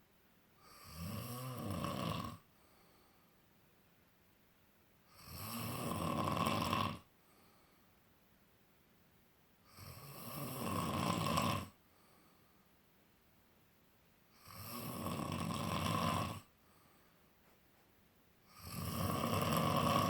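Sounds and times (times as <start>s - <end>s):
person snoring: 0.6s - 2.5s, 5.1s - 7.1s, 9.7s - 11.8s, 14.3s - 16.5s, 18.5s - 20.0s.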